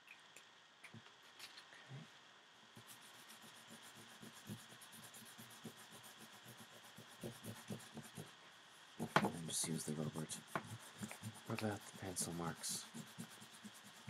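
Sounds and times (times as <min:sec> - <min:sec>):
pencil drawing on paper: 0:02.8 - 0:08.4, 0:09.0 - 0:14.0.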